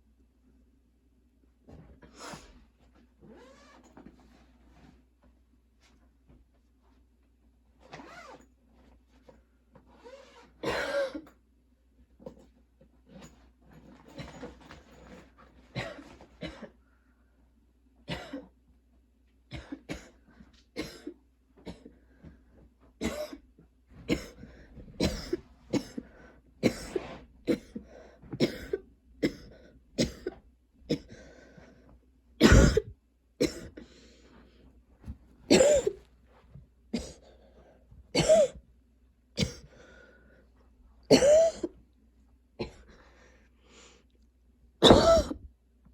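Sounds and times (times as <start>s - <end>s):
girl coughing: 10.6s - 11.2s, 20.8s - 21.8s, 25.0s - 26.0s, 28.4s - 31.2s, 32.4s - 33.8s, 35.5s - 36.0s, 38.2s - 38.6s, 41.1s - 41.7s, 44.8s - 45.5s
girl clearing throat: 32.4s - 33.8s, 35.5s - 36.0s, 41.1s - 41.7s, 44.8s - 45.5s.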